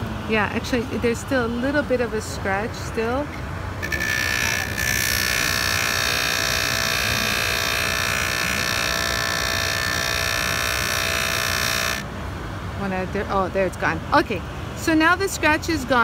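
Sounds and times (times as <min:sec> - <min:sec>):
polishing wheel grinding metal: 0:03.8 - 0:12.0.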